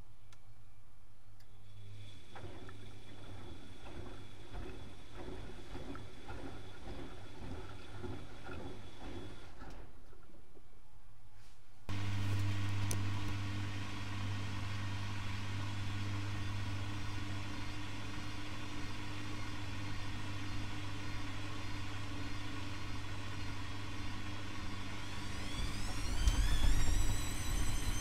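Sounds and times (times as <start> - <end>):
washing machine pump hum: 1.6 - 10.0, 11.9 - 28.0
drum motor whine rising: 11.9 - 28.0.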